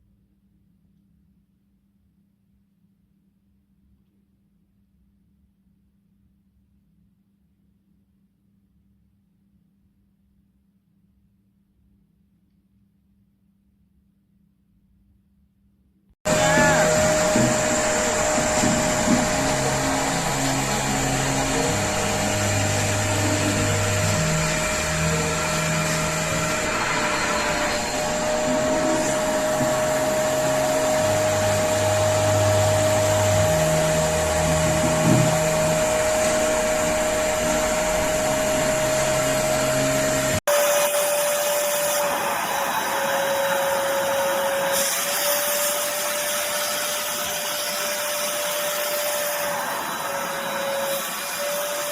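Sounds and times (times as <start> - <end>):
spot cleaner motor whining: 16.3 - 51.9.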